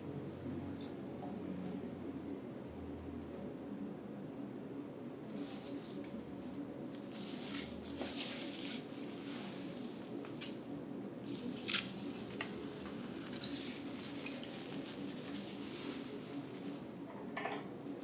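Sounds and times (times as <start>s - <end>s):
steady low hum: 0.0s - 18.0s
soft rustling: 5.3s - 17.0s.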